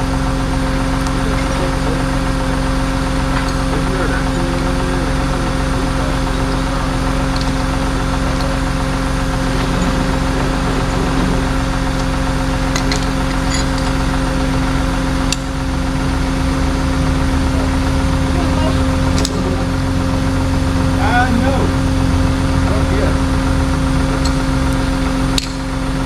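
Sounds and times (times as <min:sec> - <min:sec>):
vehicle engine idling: 0:00.0 - 0:26.0
sharp click: 0:25.4 - 0:25.6.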